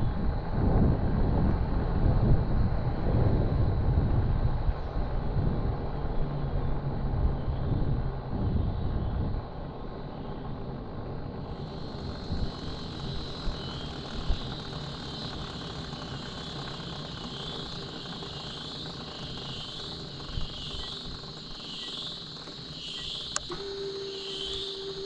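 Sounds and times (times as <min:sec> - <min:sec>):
road and wind rush: 0:00.0 - 0:23.6
steady hum: 0:00.0 - 0:25.0
drive chain whirring: 0:10.0 - 0:25.0.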